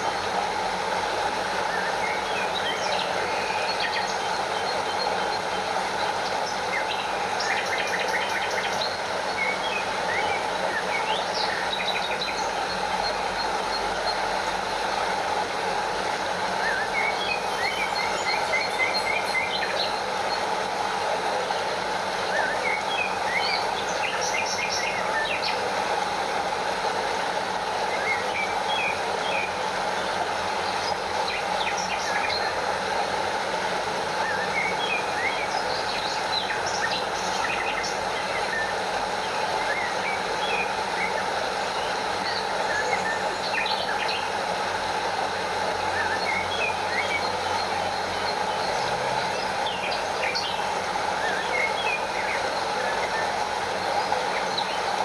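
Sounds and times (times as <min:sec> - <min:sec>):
stream over small waterfall: 0:00.0 - 0:55.0
bird chirps and trills: 0:16.6 - 0:20.6, 0:34.2 - 0:44.6, 0:45.8 - 0:55.0.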